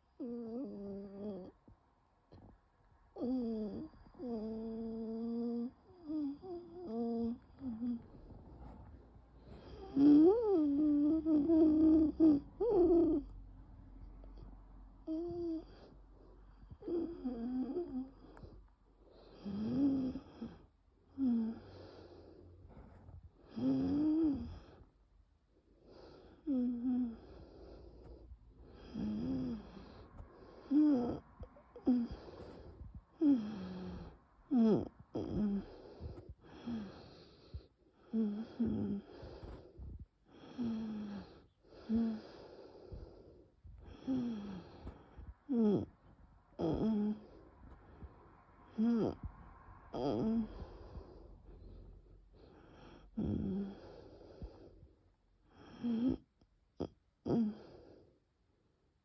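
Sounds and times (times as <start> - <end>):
wheezing laboured breaths: 3.2 - 13.3, 14.1 - 25.0, 25.6 - 56.4.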